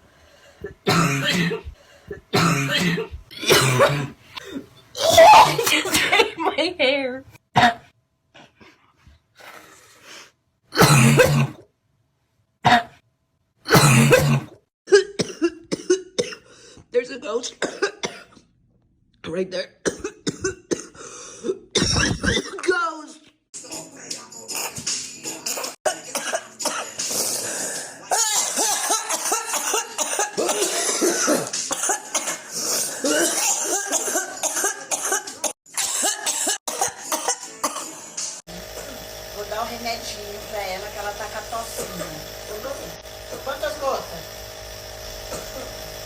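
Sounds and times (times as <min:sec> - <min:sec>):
person coughing: 0:00.6 - 0:06.3, 0:07.6 - 0:07.9, 0:10.8 - 0:11.6, 0:12.6 - 0:13.0, 0:13.7 - 0:16.5, 0:17.5 - 0:18.4, 0:19.9 - 0:22.8, 0:25.5 - 0:38.0.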